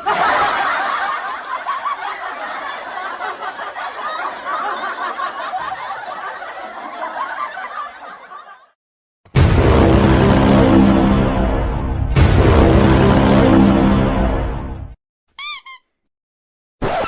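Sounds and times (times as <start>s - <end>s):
people laughing: 0.0s - 8.8s
music cue with deep bass: 9.4s - 15.0s.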